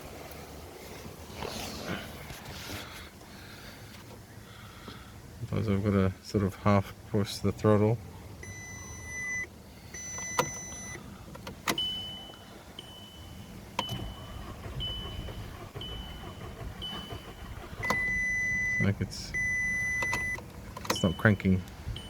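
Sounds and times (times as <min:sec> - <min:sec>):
car warning beeps: 0:08.4 - 0:22.0.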